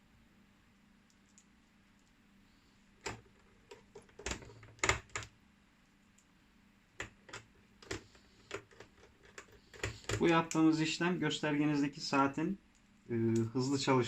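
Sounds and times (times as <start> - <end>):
clicks and knocks handling parts: 3.0 - 5.3, 7.0 - 10.6.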